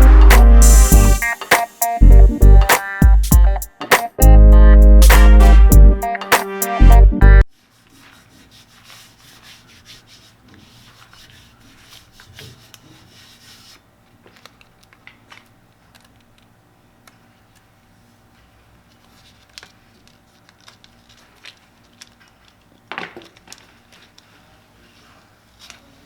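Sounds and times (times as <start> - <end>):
hand rubbing and scraping a surface: 7.5 - 14.6.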